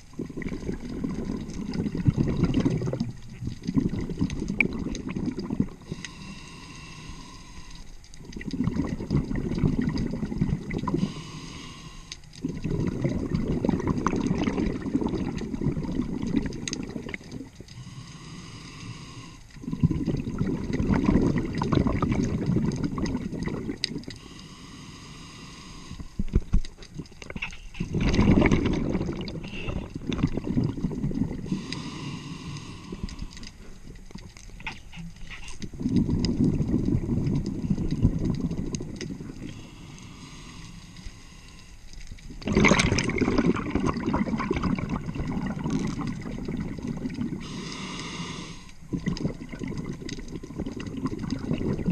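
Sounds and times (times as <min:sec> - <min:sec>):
exhaled bubbles underwater: 0:00.0 - 0:24.4, 0:25.7 - 0:51.9
diver inhaling through regulator: 0:05.7 - 0:08.0, 0:10.8 - 0:13.1, 0:17.7 - 0:20.7, 0:23.6 - 0:26.4, 0:28.8 - 0:33.8, 0:37.6 - 0:41.9, 0:44.8 - 0:50.6.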